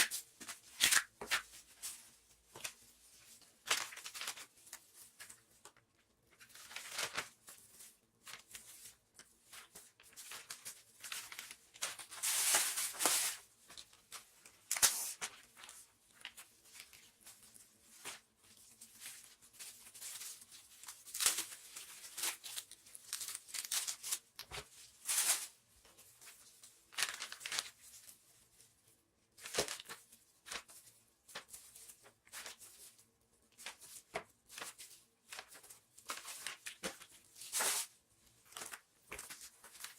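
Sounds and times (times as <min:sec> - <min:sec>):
plastic packaging crinkling: 0:06.4 - 0:25.5, 0:26.8 - 0:28.0.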